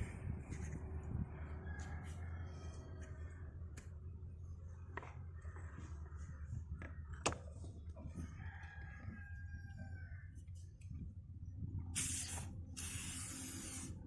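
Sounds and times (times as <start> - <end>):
rooster crowing: 1.4 - 2.9, 8.0 - 10.3.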